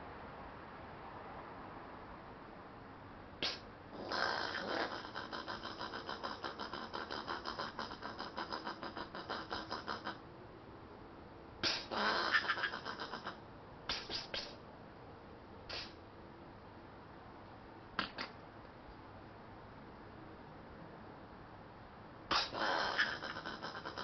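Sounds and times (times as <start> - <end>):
possum calling: 3.4 - 10.2, 11.6 - 14.6, 15.7 - 16.0, 18.0 - 18.4, 22.3 - 24.0.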